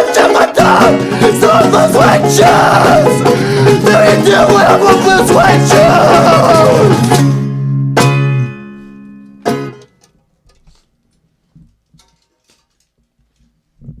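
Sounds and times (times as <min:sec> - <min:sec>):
rock band guitar chords: 0:00.0 - 0:09.9.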